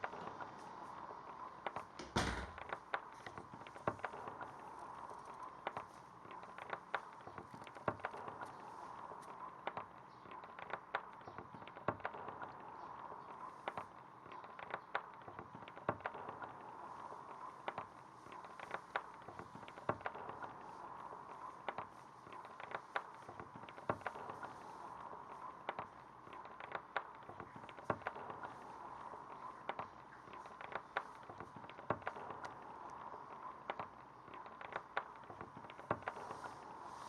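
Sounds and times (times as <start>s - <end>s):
sharp pops and clicks: 0.0s - 37.0s
steady hiss: 16.6s - 37.0s.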